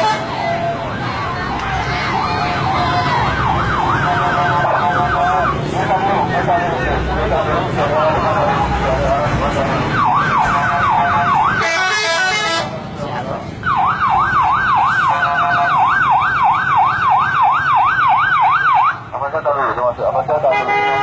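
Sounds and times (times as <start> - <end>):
bus horn warbling: 0.0 - 0.6, 11.6 - 12.8, 20.5 - 21.0
engine rumble: 0.0 - 21.0.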